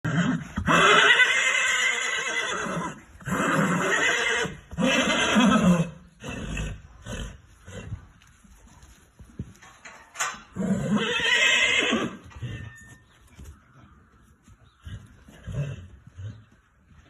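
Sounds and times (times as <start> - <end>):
horse neighing: 0.0 - 7.9, 10.5 - 12.6.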